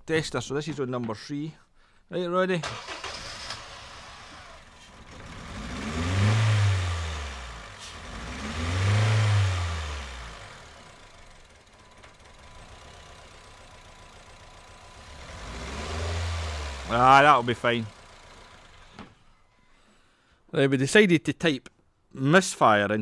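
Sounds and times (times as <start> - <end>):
car engine revving: 2.7 - 19.0.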